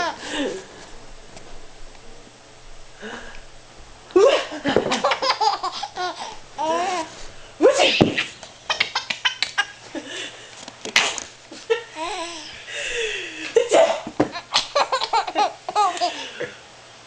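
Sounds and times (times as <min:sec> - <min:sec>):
baby laughing and squealing: 0:05.0 - 0:07.2, 0:08.7 - 0:09.8, 0:12.0 - 0:12.5, 0:14.4 - 0:16.1
pretend sneeze: 0:07.6 - 0:08.4.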